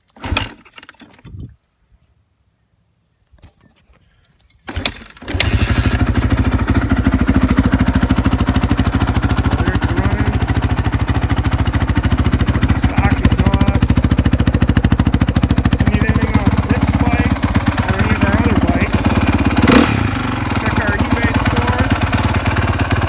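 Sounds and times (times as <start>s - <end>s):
motorcycle engine idling: 5.3s - 23.0s.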